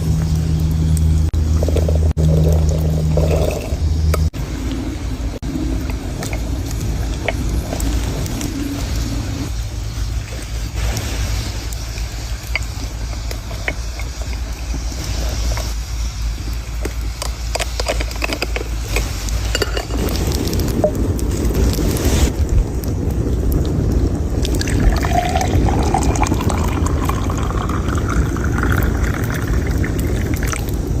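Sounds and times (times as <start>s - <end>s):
low rumble: 0.0s - 31.0s
tea pouring into a cup: 24.4s - 30.8s.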